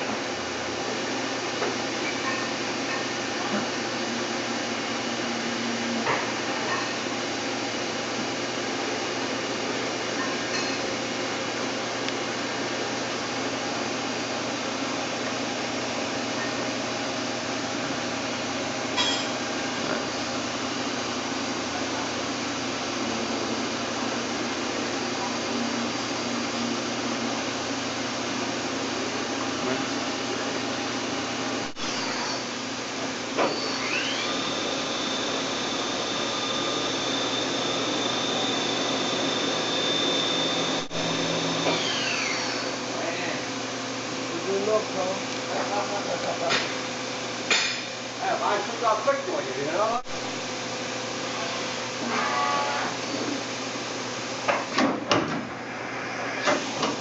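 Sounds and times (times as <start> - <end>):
milling machine hum: 0.0 - 47.4, 49.6 - 57.0
spindle whine: 33.4 - 42.8.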